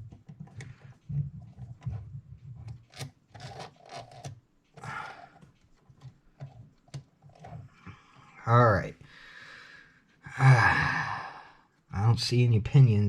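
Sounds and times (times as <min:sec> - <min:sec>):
clock parts clicking and tapping: 0:00.0 - 0:04.8.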